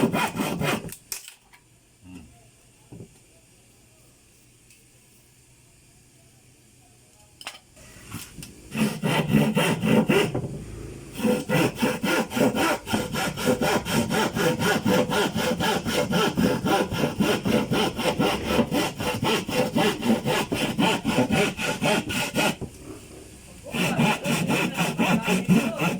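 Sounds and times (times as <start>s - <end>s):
handsaw cutting: 0.0s - 0.9s, 8.7s - 10.4s, 11.2s - 22.6s, 23.7s - 25.9s.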